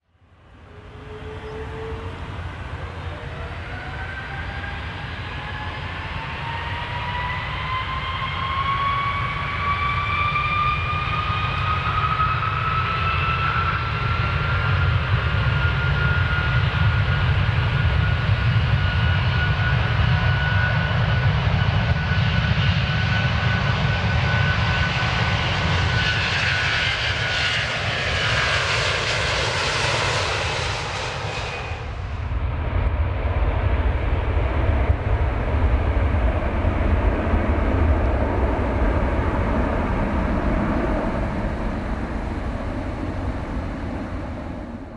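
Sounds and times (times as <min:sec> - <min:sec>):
airplane engines roaring on takeoff: 0:00.0 - 0:44.9
engine whine rising in pitch: 0:00.6 - 0:14.5.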